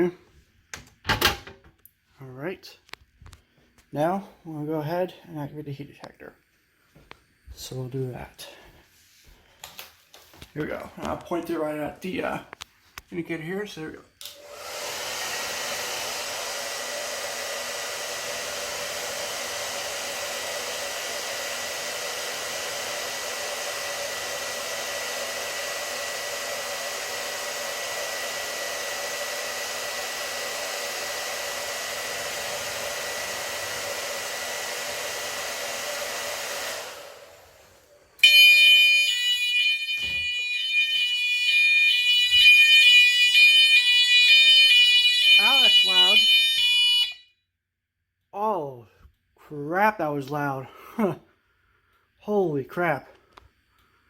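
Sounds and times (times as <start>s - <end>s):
hair dryer blowing: 14.2s - 47.2s
fire alarm horn pulsing: 38.2s - 47.5s.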